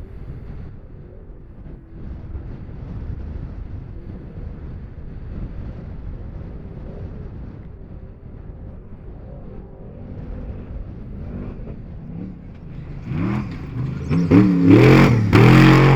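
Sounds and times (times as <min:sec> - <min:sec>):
wind rumble on microphone: 0:00.0 - 0:15.9
wavering engine note: 0:09.3 - 0:15.9.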